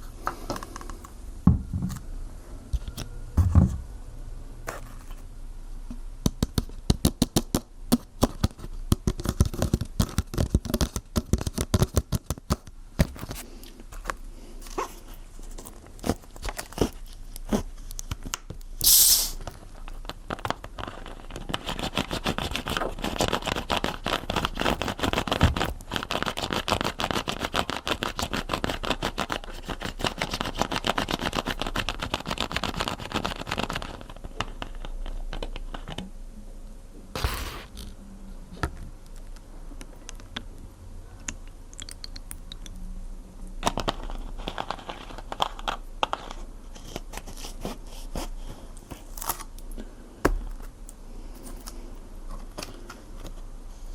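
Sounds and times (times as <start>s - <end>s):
hiss of fire doused with water: 18.8s - 19.4s.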